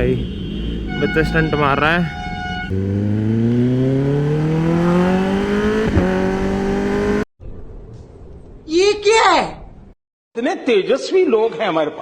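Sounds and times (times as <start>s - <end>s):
motorcycle engine accelerating: 2.7s - 7.3s.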